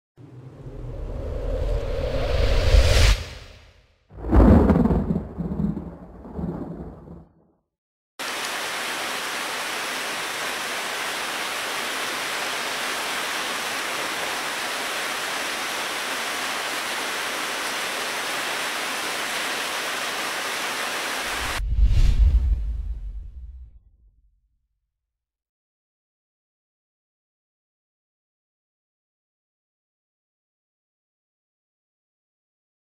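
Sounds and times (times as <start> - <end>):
loud low rumble: 4.2 - 7.3
heavy rain hissing: 8.2 - 21.6.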